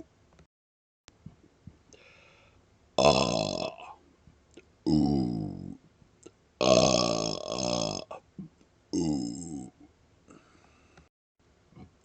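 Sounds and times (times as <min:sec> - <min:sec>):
long belly burp: 0:03.0 - 0:04.0, 0:04.9 - 0:05.8, 0:06.6 - 0:09.8.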